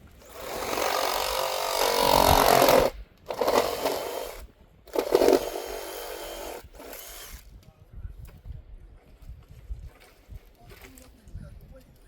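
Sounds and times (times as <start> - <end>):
handheld power tool running: 0.2 - 7.4.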